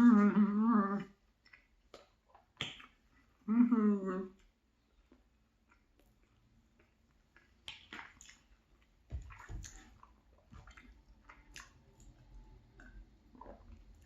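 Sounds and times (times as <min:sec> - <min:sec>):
wet chewing mouth sounds: 0:04.4 - 0:14.0.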